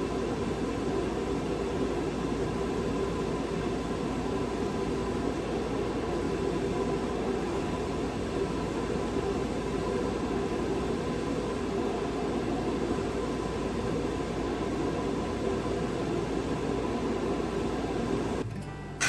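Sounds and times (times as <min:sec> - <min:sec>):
faint constant whine: 0:00.0 - 0:19.0.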